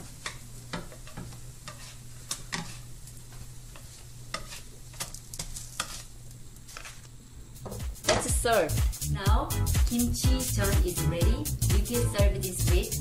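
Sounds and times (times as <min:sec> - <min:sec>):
pancakes sizzling in oil: 0:00.0 - 0:07.2
utensil scraping pan: 0:00.7 - 0:02.9, 0:03.7 - 0:06.1.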